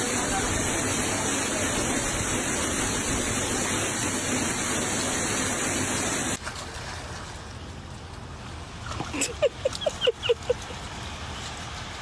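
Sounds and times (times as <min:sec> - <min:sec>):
heavy rain pouring: 0:00.0 - 0:06.4
wind: 0:00.0 - 0:12.0.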